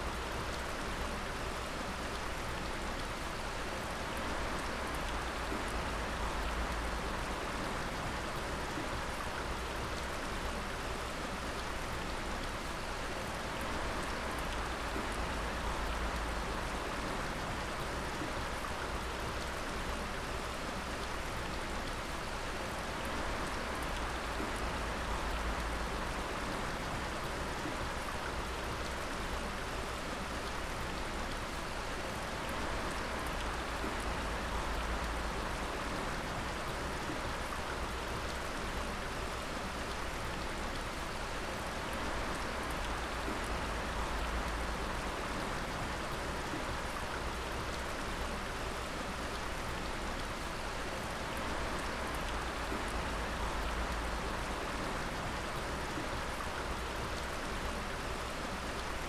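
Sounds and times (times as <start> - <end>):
running water: 0.0 - 59.0
water dripping: 32.4 - 59.0.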